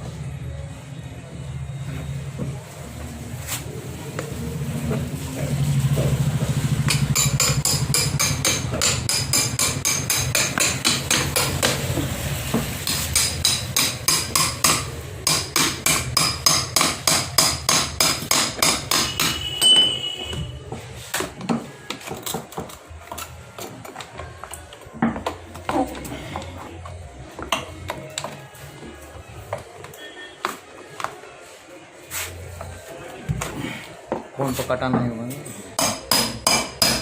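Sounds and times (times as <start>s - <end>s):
hammer blows with metallic ring: 12.8s - 20.3s.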